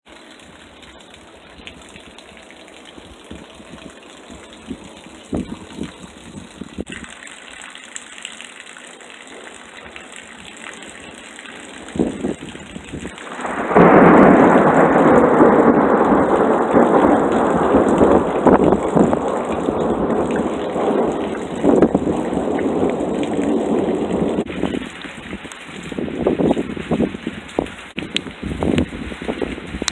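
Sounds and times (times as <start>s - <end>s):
rain falling: 0.0s - 29.9s
low thunder rumbles: 0.5s - 7.0s, 10.2s - 29.9s
loud thunder crash: 11.8s - 25.4s.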